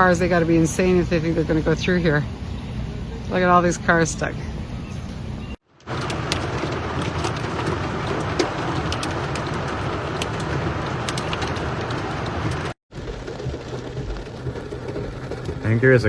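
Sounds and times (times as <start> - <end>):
heavy rain and floodwater rushing: 5.8 - 16.0
raindrops ticking: 5.8 - 16.0.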